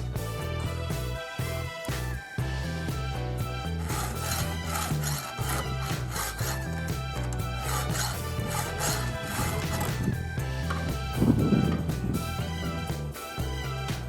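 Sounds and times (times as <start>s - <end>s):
background music: 0.0s - 14.0s
file rasping on chainsaw chain: 3.8s - 6.8s, 7.6s - 9.9s.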